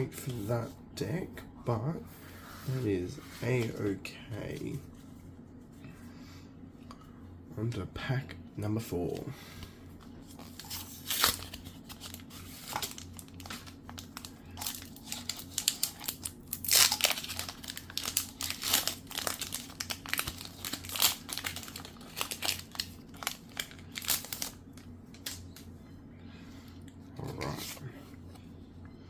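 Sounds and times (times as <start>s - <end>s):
foil wrapper crinkling and tearing: 10.2s - 25.6s.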